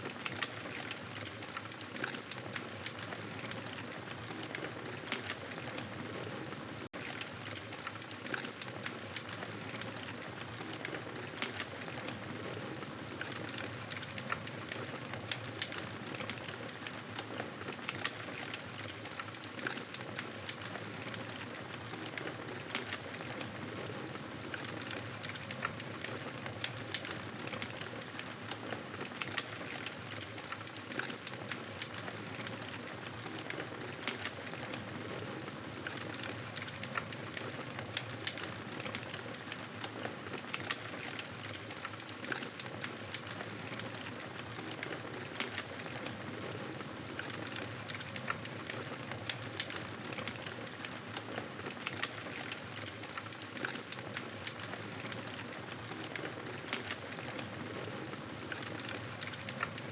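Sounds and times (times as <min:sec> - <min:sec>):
campfire crackling: 0:06.4 - 0:59.9
fire pops and snaps: 0:35.8 - 0:59.9.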